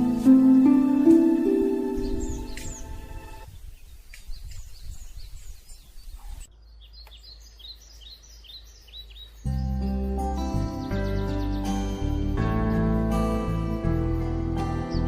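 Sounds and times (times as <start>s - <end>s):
background music: 0.0s - 3.4s, 9.5s - 15.0s
small birds chirping: 0.0s - 15.0s.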